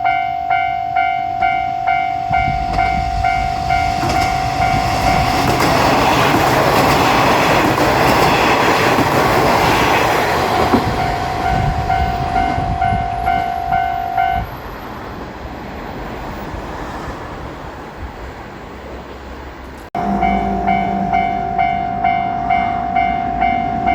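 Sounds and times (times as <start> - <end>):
crossing warning bell clanging: 0.0 - 14.8, 20.0 - 23.9
diesel railcar passing: 0.0 - 23.9.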